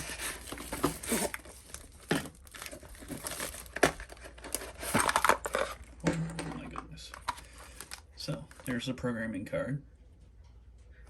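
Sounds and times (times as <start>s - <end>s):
packaging crinkling and tearing: 0.0s - 6.0s, 7.1s - 8.8s.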